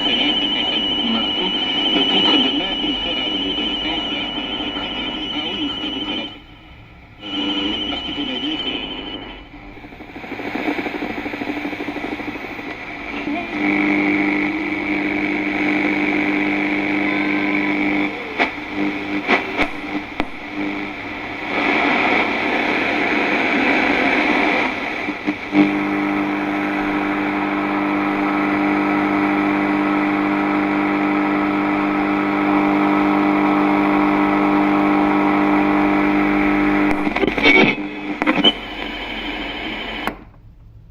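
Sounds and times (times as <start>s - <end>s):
radio static hiss: 0.0s - 40.3s
buzzing interference hum: 0.0s - 40.4s
crackles and clicks: 9.8s - 32.0s, 33.9s - 40.3s.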